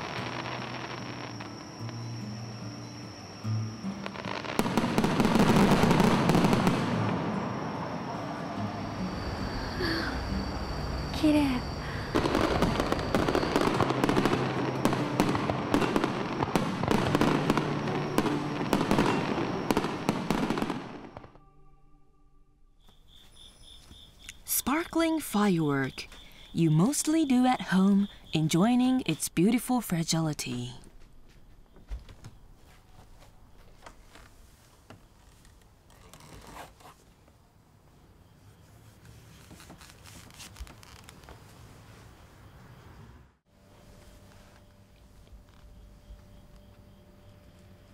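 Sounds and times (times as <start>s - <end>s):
fireworks bangs and crackling: 0.0s - 2.2s, 3.7s - 8.2s, 11.6s - 21.4s
faint steady tones: 0.0s - 32.9s, 42.0s - 47.9s.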